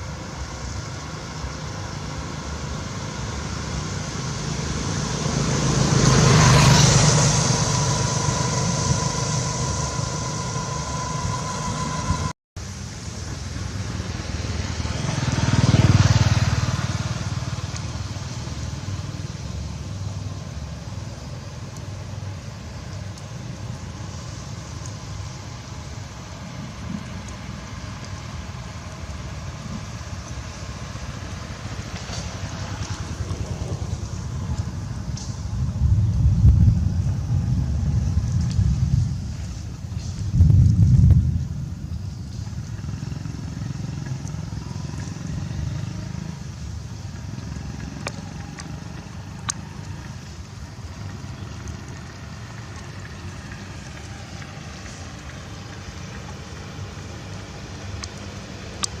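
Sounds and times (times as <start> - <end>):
vehicles passing by: 0.0 - 59.0
steady background hum: 6.7 - 13.6.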